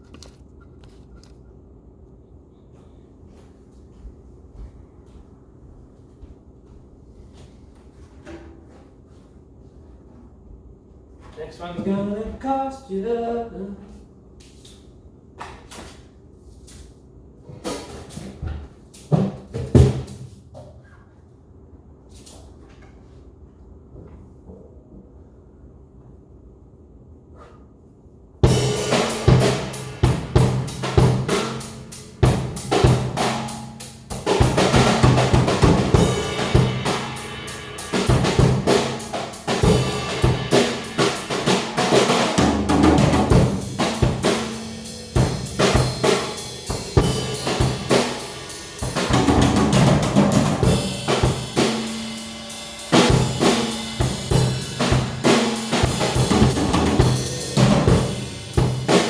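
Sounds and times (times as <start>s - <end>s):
drum kit groove: 28.4s - 59.0s
music: 28.4s - 59.0s.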